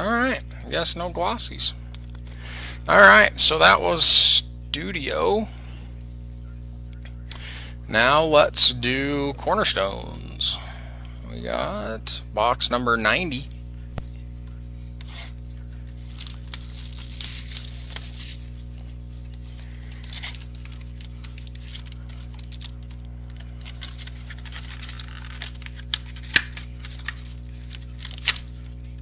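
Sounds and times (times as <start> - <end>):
steady low hum: 0.0 - 29.0
packaging tearing and crinkling: 15.0 - 29.0.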